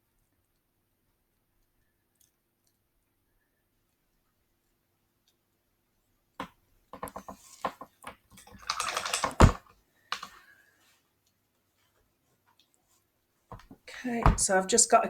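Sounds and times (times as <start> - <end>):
small clicks and taps: 6.4 - 10.4.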